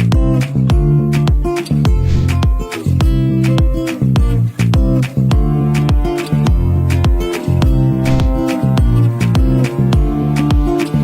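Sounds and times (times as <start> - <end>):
plucked guitar notes: 0.0 - 11.0
kick drums: 0.1 - 6.7.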